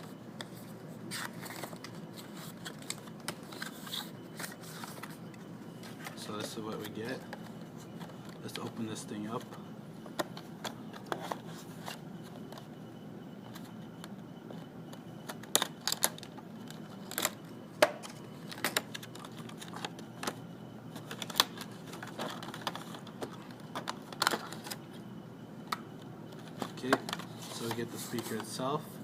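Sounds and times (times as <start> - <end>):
packaging clicks and rustles: 0.4 - 9.5, 13.5 - 25.0, 25.6 - 28.6.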